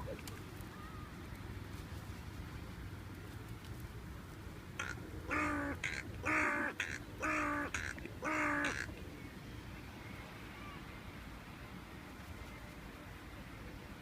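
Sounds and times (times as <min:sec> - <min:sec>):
crow cawing: 0:04.8 - 0:08.9.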